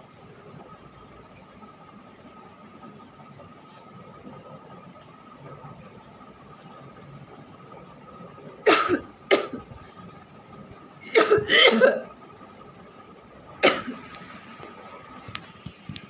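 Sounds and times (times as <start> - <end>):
person coughing: 8.7 - 9.6, 11.0 - 12.1, 13.6 - 14.0.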